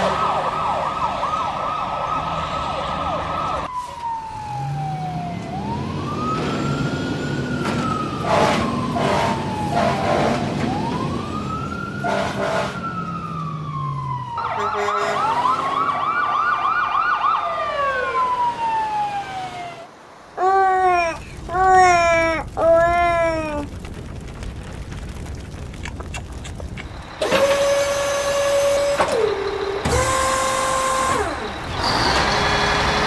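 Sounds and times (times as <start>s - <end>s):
fire truck siren: 0.0s - 20.0s, 26.9s - 33.0s
horn blasts: 8.2s - 10.6s, 12.0s - 12.8s, 14.4s - 16.0s, 27.2s - 31.4s.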